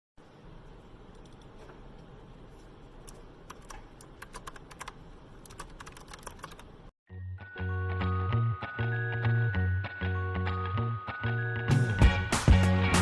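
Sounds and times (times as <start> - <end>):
mechanical keyboard typing: 3.1 - 6.7
music: 7.1 - 13.0.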